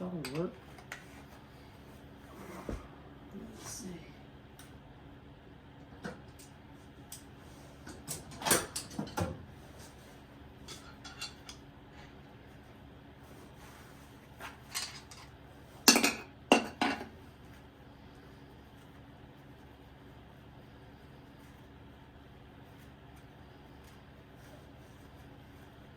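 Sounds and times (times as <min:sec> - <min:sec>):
tools clanking on metal engine: 0:10.6 - 0:11.6.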